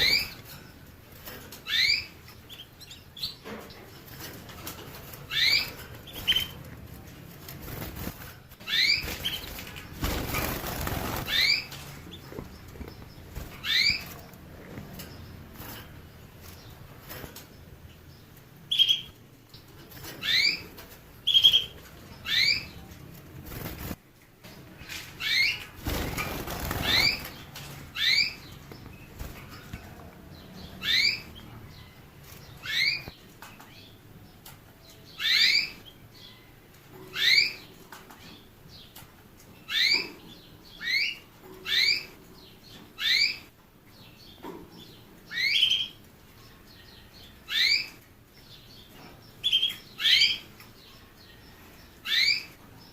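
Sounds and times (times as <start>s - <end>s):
wings flapping: 7.4s - 14.3s, 23.4s - 24.0s, 25.6s - 27.9s.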